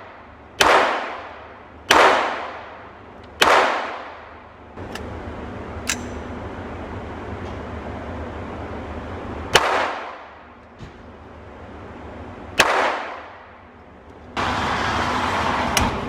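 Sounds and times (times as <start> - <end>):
pistol shots with echo: 0.0 - 4.4, 9.5 - 10.5, 12.6 - 13.6.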